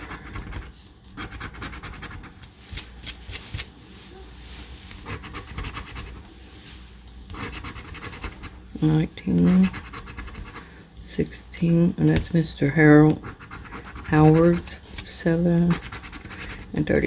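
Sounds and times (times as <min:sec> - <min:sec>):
lottery ticket being scratched: 0:05.0 - 0:06.3, 0:07.3 - 0:17.0.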